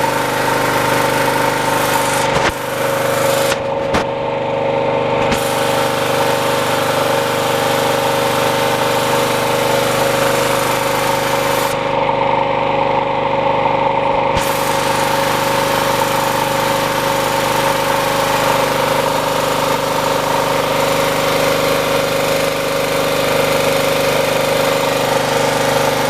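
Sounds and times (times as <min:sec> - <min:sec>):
generator engine running: 0:00.0 - 0:26.0.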